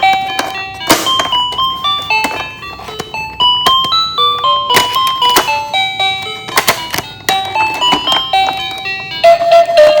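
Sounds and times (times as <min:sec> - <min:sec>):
toy siren beeping tones: 0:00.0 - 0:10.0
plastic clicks and clatters: 0:04.7 - 0:05.6, 0:06.4 - 0:08.8.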